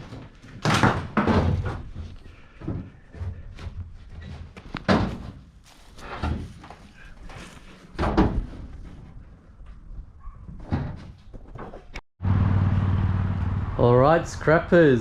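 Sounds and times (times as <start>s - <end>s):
scrap metal bangs and thuds: 0.0s - 3.0s.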